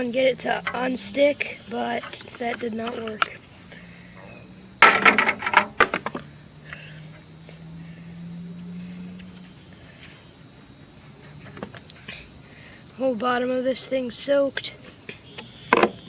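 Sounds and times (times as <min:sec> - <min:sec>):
crickets chirring: 0:00.0 - 0:16.0
plastic parts clattering: 0:04.8 - 0:06.2.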